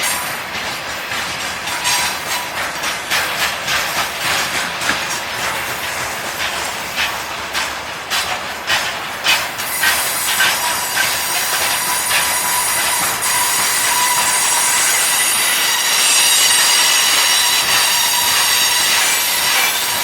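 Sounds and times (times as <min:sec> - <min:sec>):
train wheels clacking over rail joints: 0:00.0 - 0:20.0
high-pitched wheel squeal: 0:10.5 - 0:20.0.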